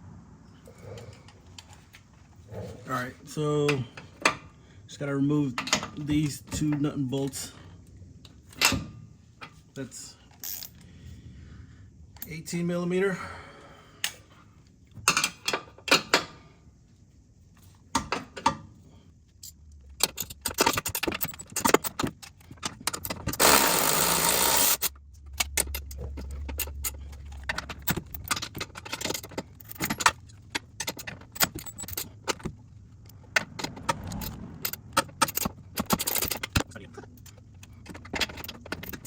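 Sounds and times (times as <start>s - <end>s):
wrench clinking on bolts: 19.4s - 32.5s.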